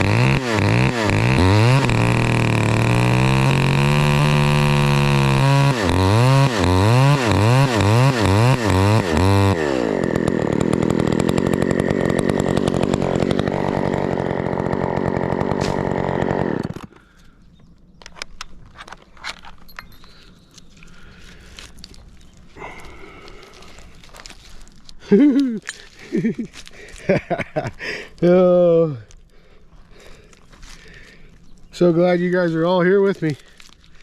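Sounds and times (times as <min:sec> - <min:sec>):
chainsaw revving: 0:00.0 - 0:17.2, 0:20.2 - 0:34.0.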